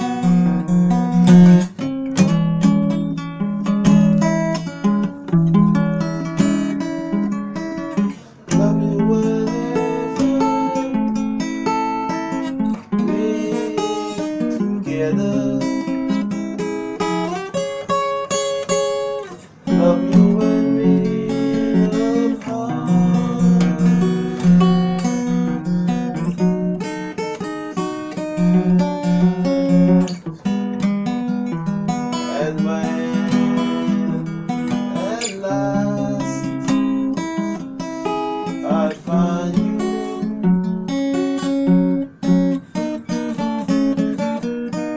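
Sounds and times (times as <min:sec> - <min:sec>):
acoustic guitar strumming chords: 0:00.0 - 0:44.9.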